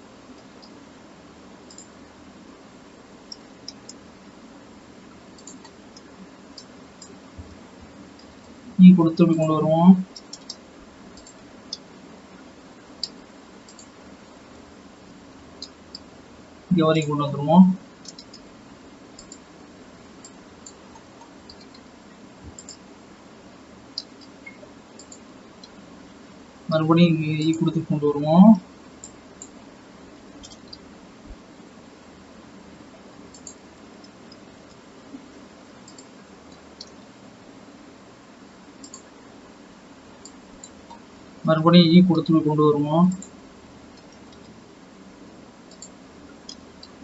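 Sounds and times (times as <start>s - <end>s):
microphone hiss and hum: 0.0s - 47.0s
computer mouse clicks: 1.7s - 2.0s, 3.3s - 4.0s, 5.3s - 8.6s, 10.1s - 11.9s, 13.0s - 14.0s, 15.6s - 16.1s, 18.0s - 18.5s, 19.2s - 19.5s, 20.2s - 22.8s, 23.9s - 25.8s, 29.0s - 29.6s, 30.4s - 30.9s, 33.3s - 37.1s, 38.8s - 39.1s, 40.2s - 41.1s, 43.1s - 44.6s, 45.7s - 47.0s
mouse and keyboard clicks: 5.4s - 7.2s, 10.1s - 10.6s, 18.0s - 18.5s, 22.5s - 22.8s, 30.4s - 30.9s, 38.8s - 39.1s.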